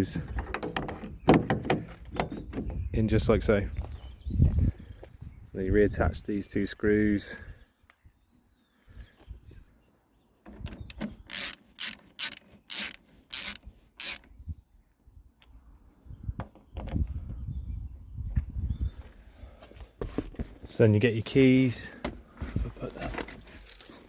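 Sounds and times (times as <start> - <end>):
screwdriver scraping strokes: 11.0 - 14.2.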